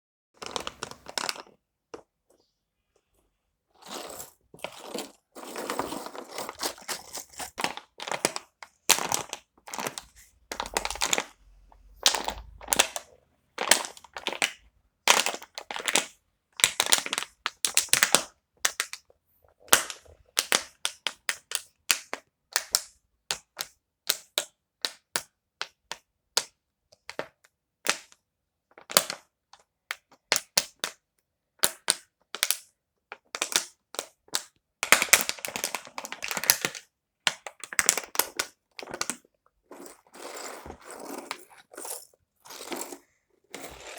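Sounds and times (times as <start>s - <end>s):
crinkling handling noise: 0.4s - 3.2s, 3.9s - 14.4s.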